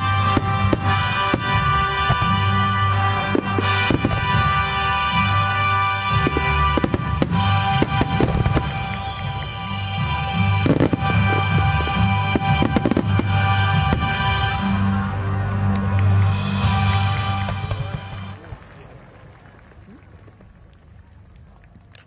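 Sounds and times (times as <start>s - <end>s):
loud music: 0.0s - 18.3s.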